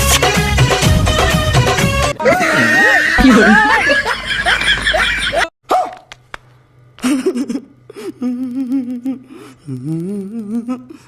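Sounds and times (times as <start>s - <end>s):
background music: 0.0s - 2.3s
person humming: 7.5s - 11.0s.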